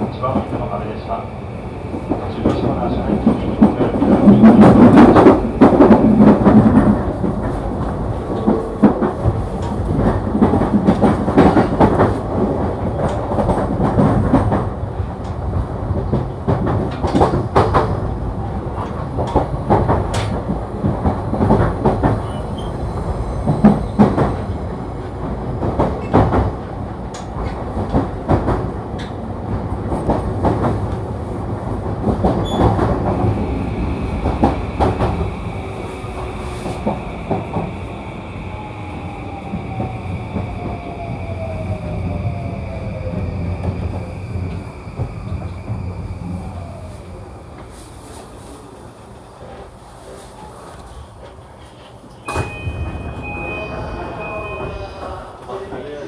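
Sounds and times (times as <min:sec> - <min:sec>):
electric train rumbling on rails: 0:00.0 - 0:56.0.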